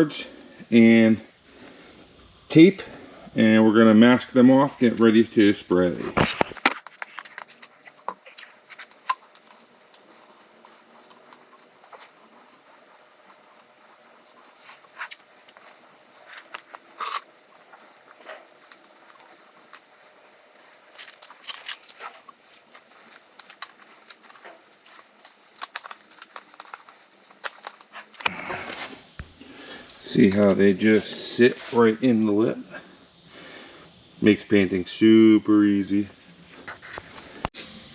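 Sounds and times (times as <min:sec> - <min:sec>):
paper crinkling: 0:06.6 - 0:28.3
tape tearing off roll: 0:06.6 - 0:28.3.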